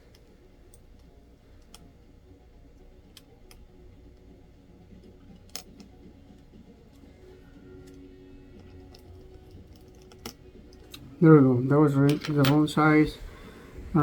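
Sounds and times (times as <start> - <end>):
screwdriver clicking on metal: 5.3 - 7.1, 7.8 - 11.1.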